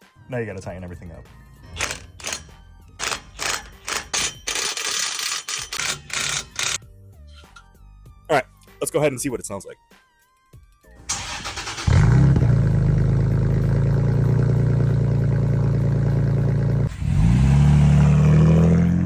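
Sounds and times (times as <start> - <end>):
engine revving: 1.2 - 4.2, 11.0 - 19.0
starter cranking: 1.6 - 6.8, 11.1 - 12.7.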